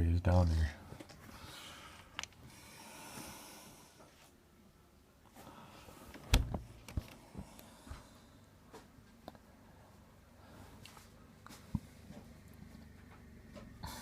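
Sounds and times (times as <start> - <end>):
heavy thump: 6.3 - 6.7.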